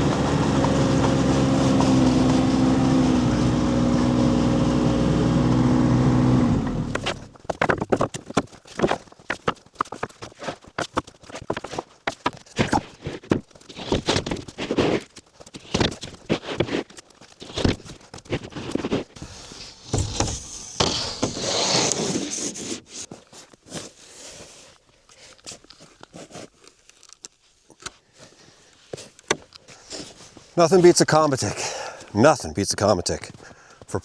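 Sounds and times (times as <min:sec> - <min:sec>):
knocks and scrapes: 0:06.9 - 0:24.7.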